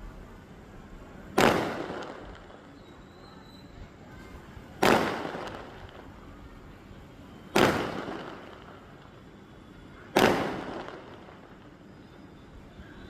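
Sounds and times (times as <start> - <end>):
firework bursts: 0.0 - 13.0.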